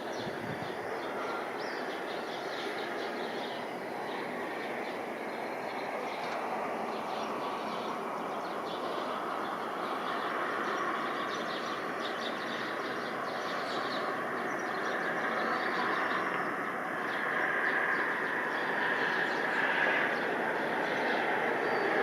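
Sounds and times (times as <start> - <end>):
jet engines rushing: 0.0 - 22.0.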